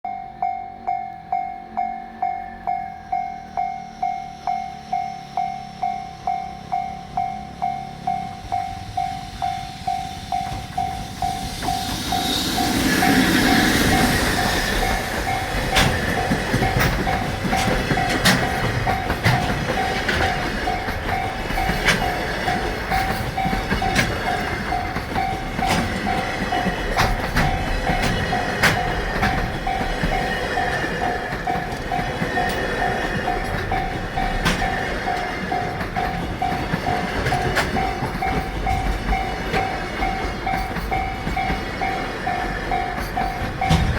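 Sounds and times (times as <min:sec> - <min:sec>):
level-crossing warning bell: 0:00.0 - 0:43.9
electric locomotive passing: 0:00.1 - 0:43.9
wagon wheels clicking over rail joints: 0:12.6 - 0:43.9.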